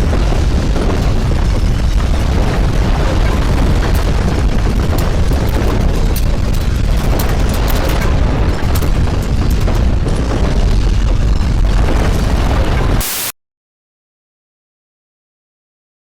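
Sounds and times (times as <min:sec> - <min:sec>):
crackles and rattles: 0:00.0 - 0:13.2
deep earthquake rumble: 0:00.0 - 0:13.2.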